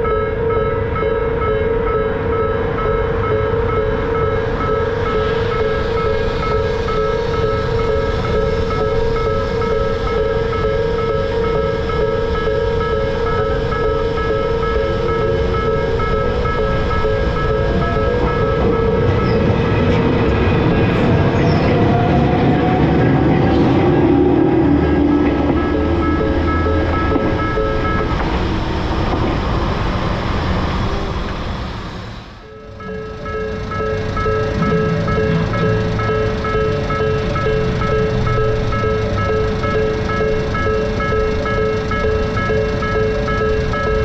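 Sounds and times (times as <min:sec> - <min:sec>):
railroad crossing bell ringing: 0:00.0 - 0:28.9, 0:32.4 - 0:44.0
train wheels rumbling on rails: 0:00.0 - 0:44.0
rising whine: 0:02.2 - 0:44.0
low rumble: 0:33.6 - 0:41.6.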